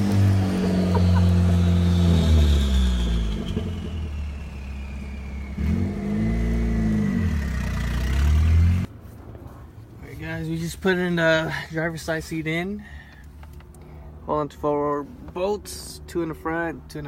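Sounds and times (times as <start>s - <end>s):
car engine revving: 0.0s - 8.9s.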